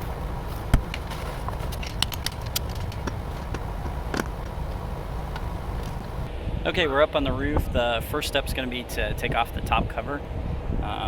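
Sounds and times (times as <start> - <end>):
wind rumble on microphone: 0.0 - 11.0.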